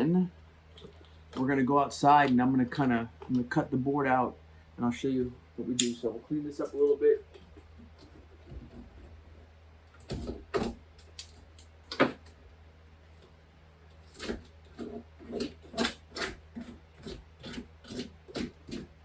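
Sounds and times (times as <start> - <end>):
knife scraping drywall: 10.0 - 10.8, 13.9 - 19.0.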